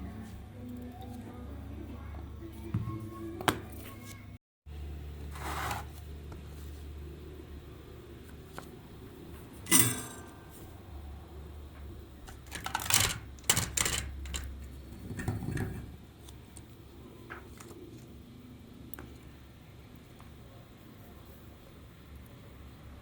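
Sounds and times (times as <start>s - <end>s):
small parts clinking on workbench: 9.7s - 10.2s, 12.3s - 15.7s
sharp ringing clink: 9.7s - 10.4s.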